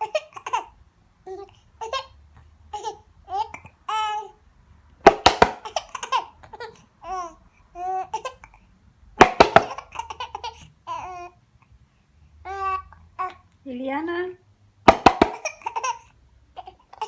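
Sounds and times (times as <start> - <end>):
baby hiccuping: 0.0 - 2.1, 5.5 - 6.8, 15.3 - 17.0
baby squealing and babbling: 0.0 - 4.4, 9.6 - 11.4, 12.4 - 13.4.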